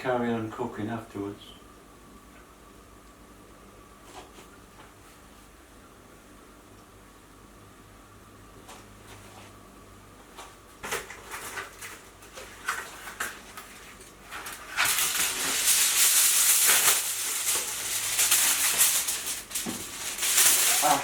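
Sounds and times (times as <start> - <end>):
kitchen foil crinkling: 10.8 - 21.0.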